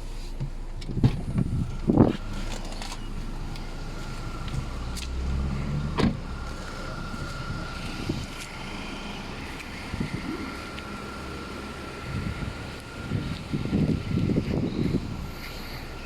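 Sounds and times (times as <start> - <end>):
car engine hum: 0.0 - 16.0.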